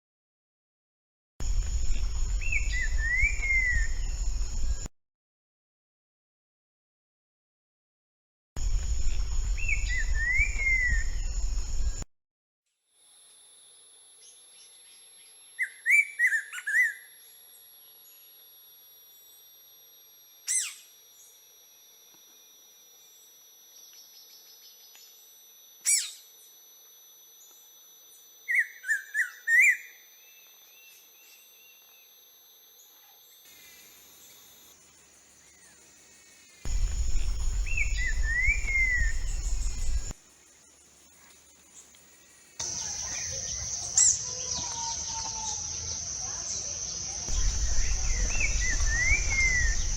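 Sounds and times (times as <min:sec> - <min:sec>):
high insect drone: 0:01.4 - 0:04.9, 0:08.6 - 0:12.0, 0:12.9 - 0:49.9
bird singing whistled phrases: 0:02.4 - 0:04.1, 0:09.6 - 0:11.3, 0:15.6 - 0:17.1, 0:28.5 - 0:32.1, 0:37.6 - 0:40.1, 0:47.3 - 0:49.9
loud low rumble: 0:36.7 - 0:40.1, 0:47.3 - 0:49.9.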